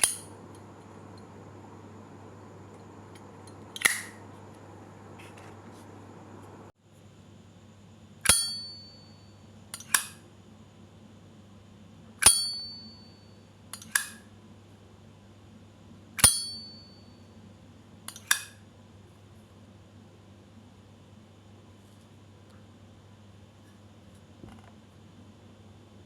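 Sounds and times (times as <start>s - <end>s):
lighter lid clicking open and shut: 3.8s - 4.2s, 9.8s - 10.2s, 13.8s - 14.2s, 18.1s - 18.6s.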